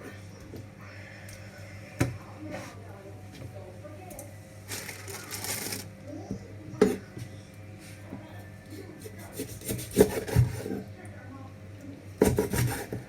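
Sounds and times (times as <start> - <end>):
knife scraping: 9.0 - 10.8, 12.2 - 13.0.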